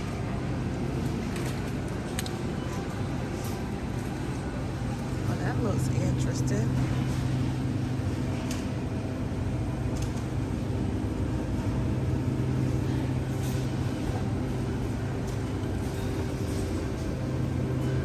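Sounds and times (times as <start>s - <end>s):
low mechanical hum: 0.0s - 18.0s.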